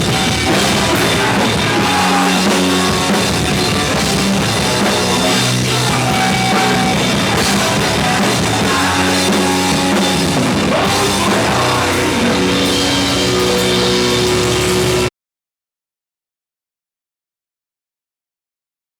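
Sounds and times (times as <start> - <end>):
drum kit: 0.0 - 15.1
punk band playing loud: 0.0 - 15.1.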